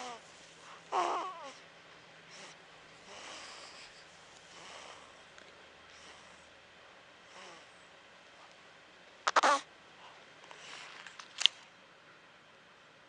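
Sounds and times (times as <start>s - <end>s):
baby squeaky vocal sound: 9.3s - 9.6s.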